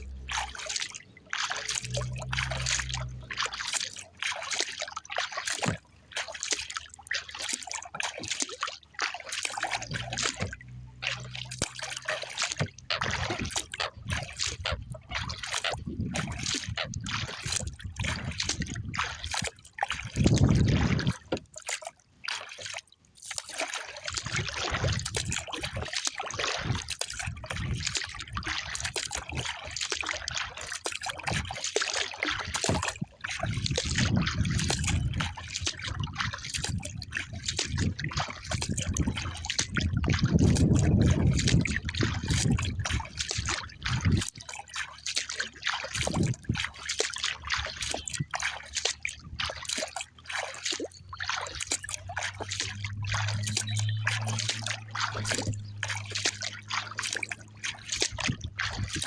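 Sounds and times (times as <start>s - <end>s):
water sloshing around kayak: 0.0s - 59.0s
wind rumble on microphone: 1.7s - 3.9s, 9.5s - 21.5s, 24.1s - 31.6s, 32.2s - 44.7s, 45.9s - 49.9s, 50.9s - 59.0s.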